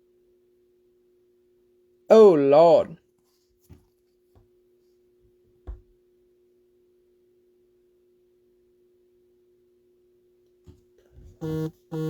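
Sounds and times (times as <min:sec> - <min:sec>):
low hum of held tones: 0:11.3 - 0:12.0.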